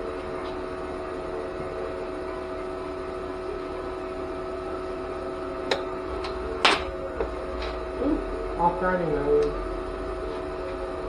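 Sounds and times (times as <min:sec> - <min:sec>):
cooling fan hiss: 0:00.0 - 0:11.0
welder transformer hum: 0:00.0 - 0:11.0.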